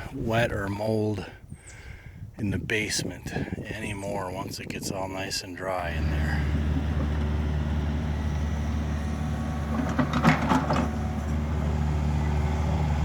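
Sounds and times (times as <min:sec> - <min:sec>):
engine idling: 0:06.0 - 0:13.0
short clicks and knocks: 0:09.7 - 0:11.4.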